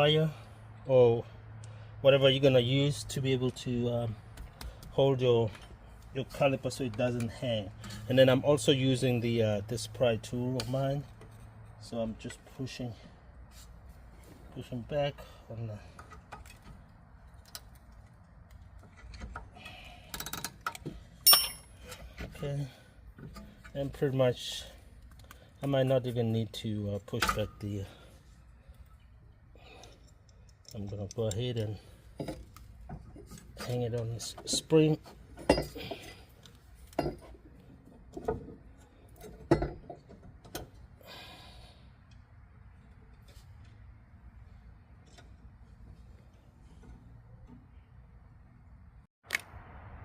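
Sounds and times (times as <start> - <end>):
metal tools clinking: 18.9 - 22.5, 33.2 - 37.4
sharp metallic clank: 21.2 - 22.0
metal tool rattling on brake caliper: 29.7 - 37.6.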